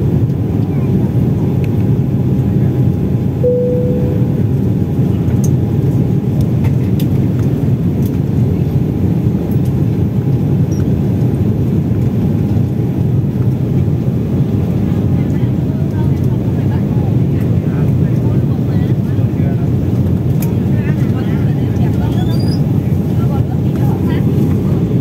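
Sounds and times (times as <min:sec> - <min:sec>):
airliner cabin rumble: 0:00.0 - 0:25.0
short clear tone: 0:03.4 - 0:04.6.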